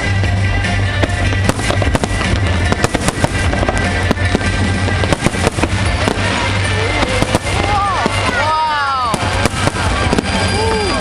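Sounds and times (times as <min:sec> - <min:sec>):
fireworks bangs and crackles: 0:00.0 - 0:11.0
music playing: 0:00.0 - 0:11.0.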